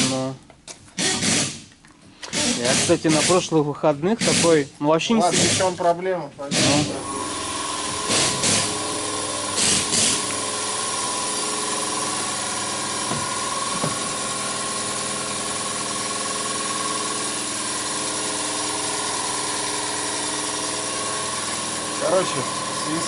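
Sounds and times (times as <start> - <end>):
loud hissing bursts: 2.3 - 3.5, 4.2 - 5.8, 6.5 - 14.3
machine motor whining: 6.5 - 23.0.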